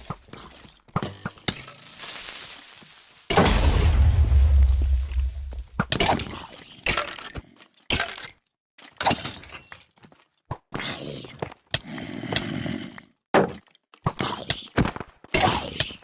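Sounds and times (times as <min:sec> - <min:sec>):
sharp cracks and crashes: 0:03.2 - 0:06.0
heavy low rumble: 0:03.5 - 0:05.8.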